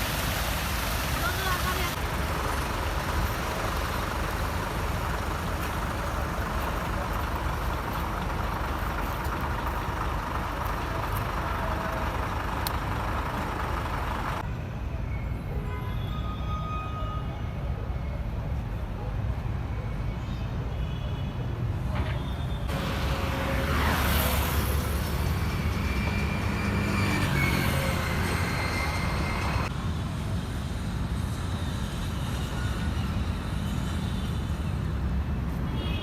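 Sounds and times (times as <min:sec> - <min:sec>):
road traffic rumble: 0:00.0 - 0:36.0.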